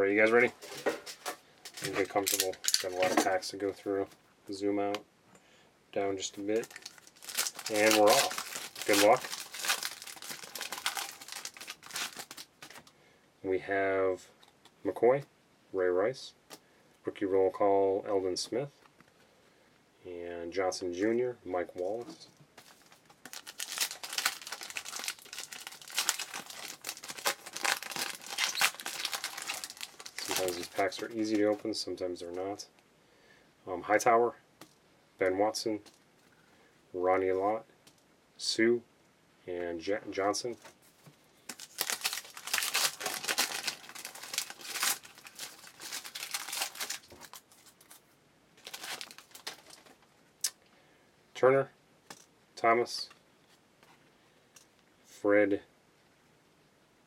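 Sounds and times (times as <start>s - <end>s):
card pack wrapper tearing and crinkling: 1.2s - 3.4s, 6.4s - 12.9s, 22.6s - 31.6s, 41.4s - 48.0s, 48.6s - 50.0s.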